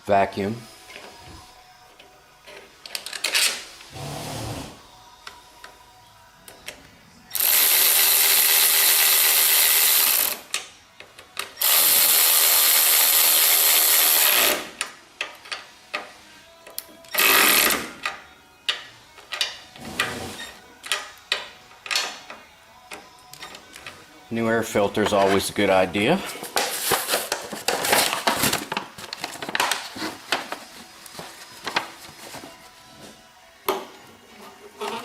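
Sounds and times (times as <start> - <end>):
handheld power tool running: 11.6 - 14.7.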